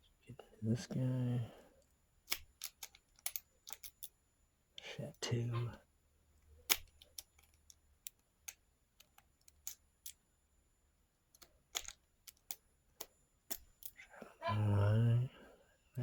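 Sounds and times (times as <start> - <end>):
lock pick clicking in lock: 2.3 - 4.2, 6.7 - 10.2, 11.3 - 14.0.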